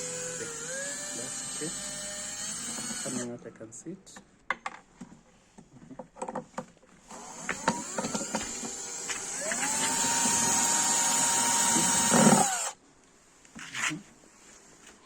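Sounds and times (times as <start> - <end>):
power drill motor whining: 0.0 - 3.3, 7.1 - 12.8.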